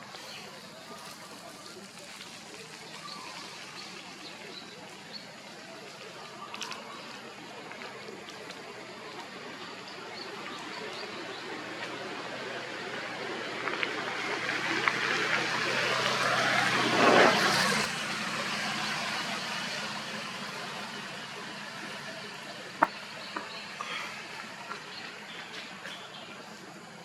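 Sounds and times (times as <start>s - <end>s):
vehicle passing by: 12.0s - 24.5s.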